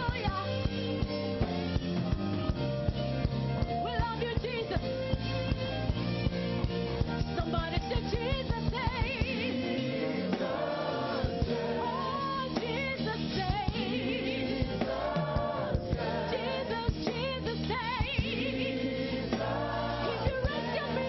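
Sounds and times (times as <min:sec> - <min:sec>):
band with drums: 0:00.0 - 0:21.0
gospel choir singing: 0:07.9 - 0:21.0.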